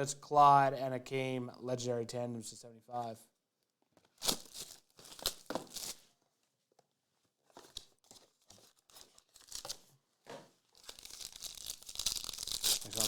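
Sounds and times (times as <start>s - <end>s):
card pack wrapper tearing and crinkling: 4.2s - 6.1s, 8.6s - 9.9s, 10.8s - 13.0s.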